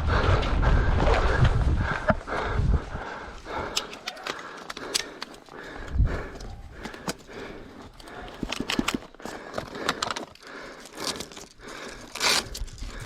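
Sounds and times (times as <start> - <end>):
footsteps on rough ground: 0.0 - 13.0
sharp clicks and snaps: 3.5 - 7.4.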